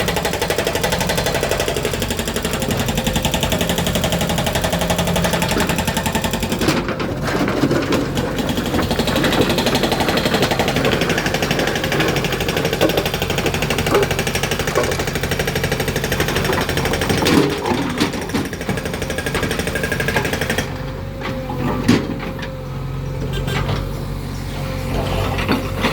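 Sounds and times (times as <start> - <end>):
diesel engine chugging: 0.0 - 25.9.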